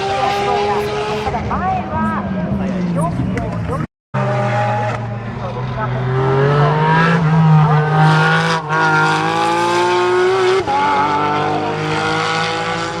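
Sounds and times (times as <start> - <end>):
race car engine at full throttle: 0.0 - 13.0.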